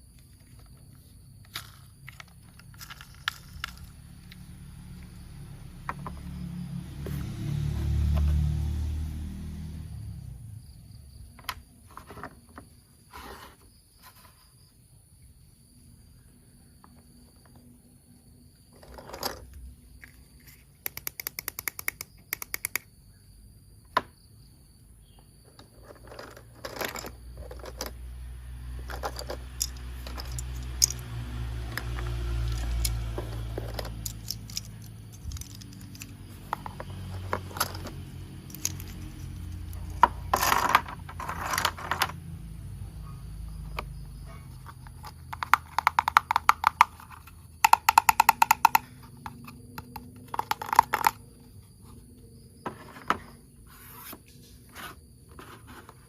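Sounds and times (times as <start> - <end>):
plastic toy parts handled: 1.4 - 4.4, 18.8 - 22.8, 25.6 - 28.0, 28.8 - 31.1, 31.9 - 42.2, 44.6 - 51.2.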